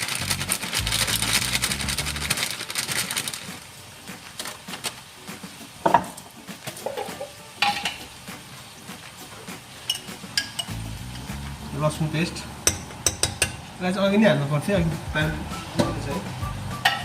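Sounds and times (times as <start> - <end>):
background music: 0.0 - 17.0
spices sizzling in oil: 0.0 - 17.0
spoon clinking against pan: 9.9 - 10.8, 12.7 - 13.6.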